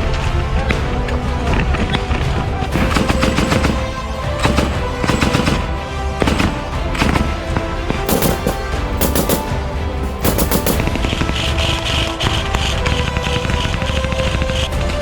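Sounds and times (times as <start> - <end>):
background music: 0.0 - 15.0
machine gun bursts: 2.7 - 11.0.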